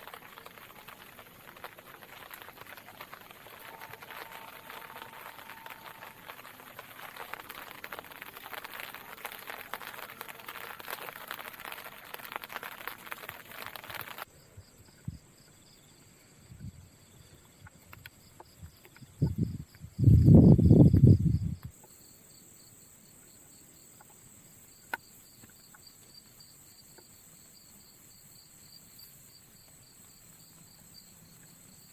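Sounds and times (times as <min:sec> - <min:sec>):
dense crackling patter: 0:00.0 - 0:14.3
night insects chirping: 0:00.0 - 0:31.9.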